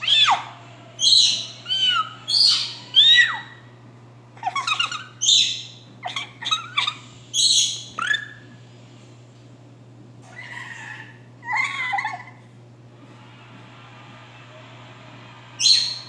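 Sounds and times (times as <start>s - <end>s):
parrot screeching and chirping: 0.0s - 3.7s, 4.4s - 8.6s, 10.2s - 12.4s, 15.6s - 16.0s.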